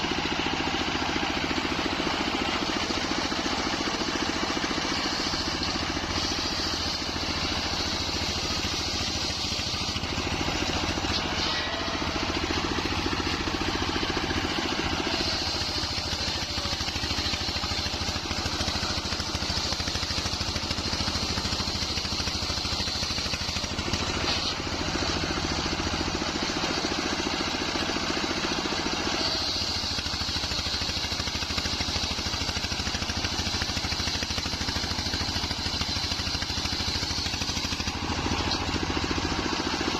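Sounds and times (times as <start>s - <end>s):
saw blade whine: 0.0s - 39.9s
sawmill engine running: 0.0s - 39.9s.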